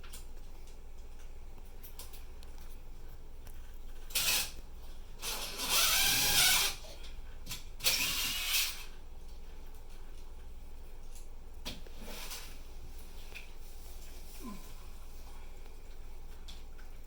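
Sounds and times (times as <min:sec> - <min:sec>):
rasping tool noise: 0:05.2 - 0:06.9.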